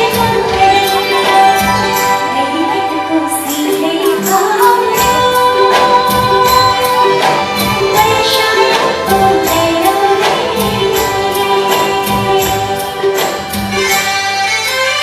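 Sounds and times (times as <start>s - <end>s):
woman singing: 0.0s - 14.1s
live folk band playing: 0.0s - 15.0s
hand drum beat: 4.3s - 14.3s.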